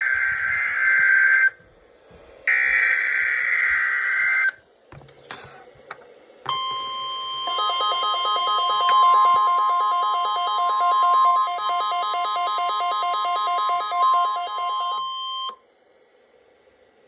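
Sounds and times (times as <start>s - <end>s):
fast alternating two-pitch beeping: 6.5s - 15.6s
steady warning alarm tone: 6.5s - 15.6s.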